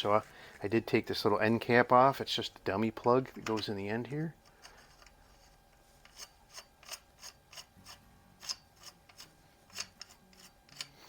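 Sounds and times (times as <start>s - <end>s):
small parts clicking and scraping: 4.4s - 11.0s.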